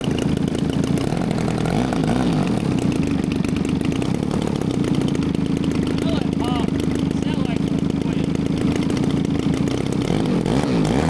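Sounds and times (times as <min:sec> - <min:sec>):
model plane engine running: 0:00.0 - 0:11.0.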